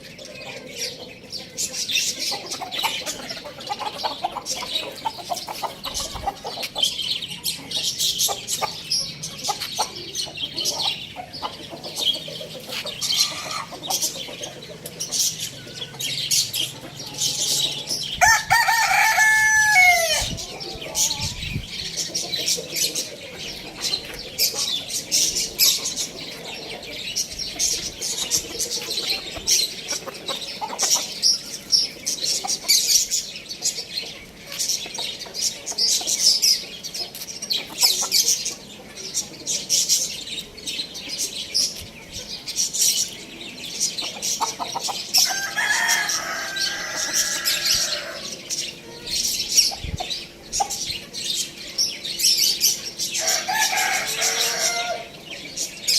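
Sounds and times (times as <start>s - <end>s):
chickens clucking: 0.0s - 55.9s
rooster crowing: 18.2s - 20.4s, 45.2s - 48.3s, 53.2s - 55.1s.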